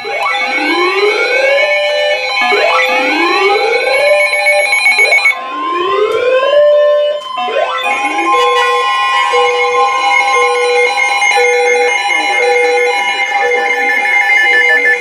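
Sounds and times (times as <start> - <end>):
rising siren-like alert tone: 2.4 - 15.0
high beeping tones: 7.6 - 15.0
steady alert tone: 7.9 - 15.0.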